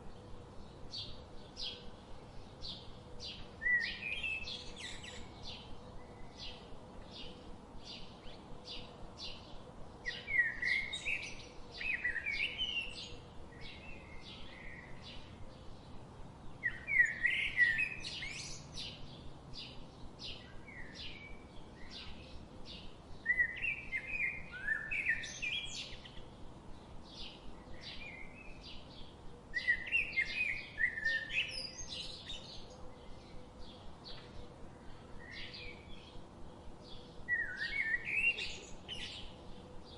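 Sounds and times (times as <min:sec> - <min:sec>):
birds twittering: 0:00.0 - 0:39.9
small songbirds chirping: 0:00.0 - 0:39.9.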